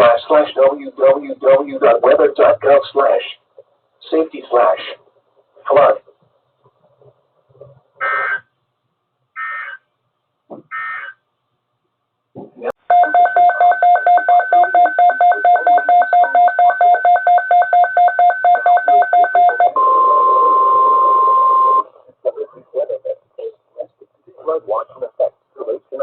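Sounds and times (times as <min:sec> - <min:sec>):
steady high alarm tone: 0:12.9 - 0:21.8.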